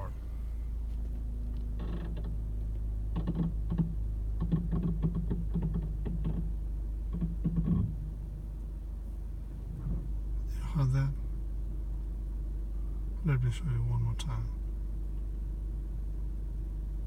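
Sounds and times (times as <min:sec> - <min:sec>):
car engine idling: 0:00.0 - 0:17.0
brake clicking and creaking: 0:00.8 - 0:10.6.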